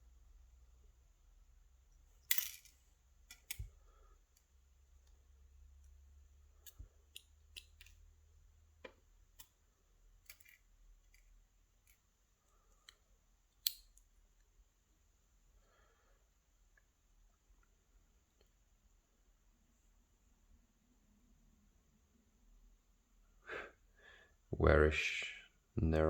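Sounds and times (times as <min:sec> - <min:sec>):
metal tools clicking and tapping: 0:02.2 - 0:03.7, 0:06.6 - 0:08.0.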